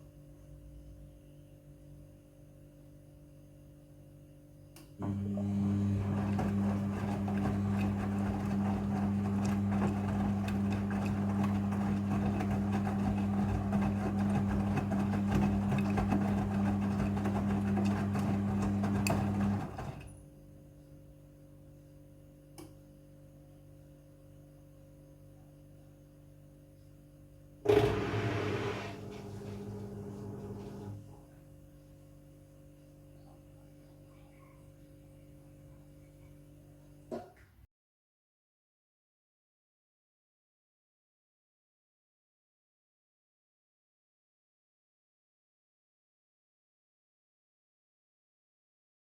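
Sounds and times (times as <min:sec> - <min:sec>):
washing machine hum: 0:05.0 - 0:20.3, 0:27.6 - 0:37.0.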